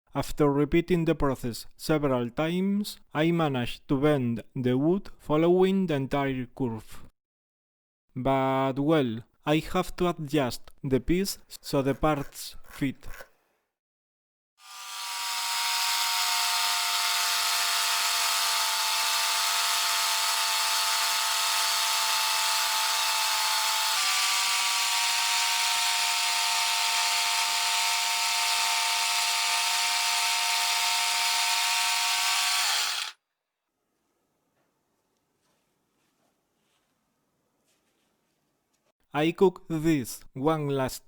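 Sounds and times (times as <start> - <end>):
power tool motor whining: 14.6 - 33.2.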